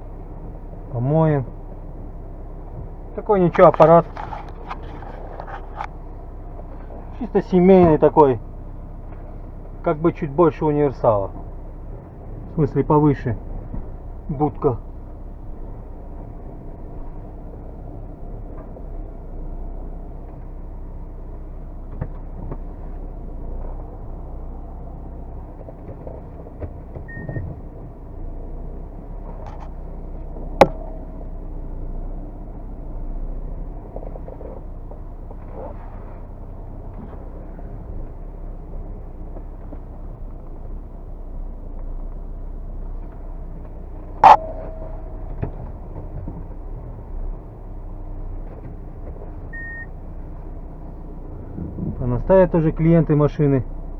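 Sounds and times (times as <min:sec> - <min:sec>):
diesel car engine running: 0:00.0 - 0:53.9
sharp metallic knocks: 0:30.6 - 0:31.8, 0:44.2 - 0:45.9.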